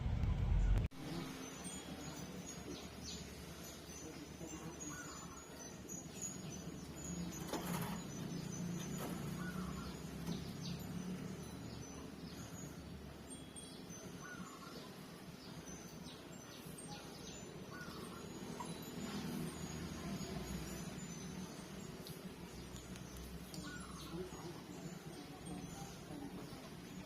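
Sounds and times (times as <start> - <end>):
steady low hum: 0.0 - 3.0.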